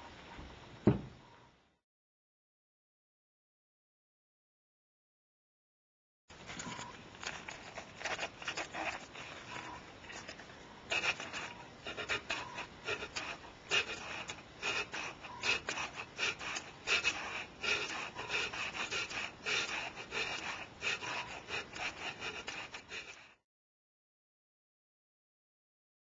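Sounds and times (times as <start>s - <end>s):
hand scraping strokes: 6.3s - 23.4s.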